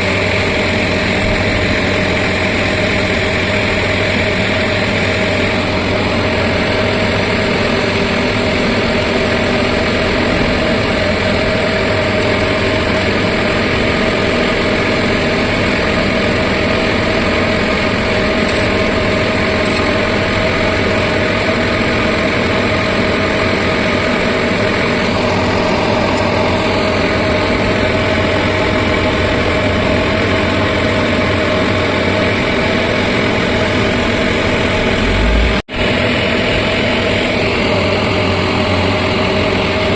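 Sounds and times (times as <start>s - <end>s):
diesel engine running steadily: 0.0s - 39.9s.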